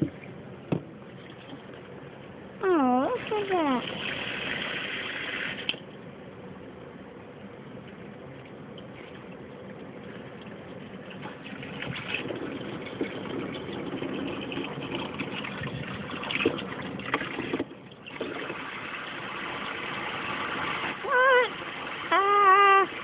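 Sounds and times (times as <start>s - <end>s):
high wavering voice: 2.6s - 3.8s, 21.0s - 23.0s
water gushing and splashing: 3.1s - 5.8s, 8.8s - 23.0s.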